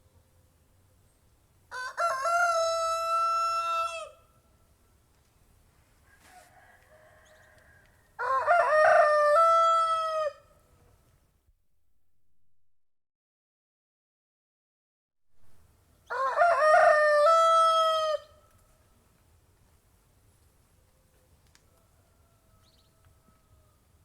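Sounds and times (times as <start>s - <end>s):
rooster crowing: 1.7s - 4.3s, 6.0s - 10.5s, 16.1s - 18.4s, 21.7s - 23.9s.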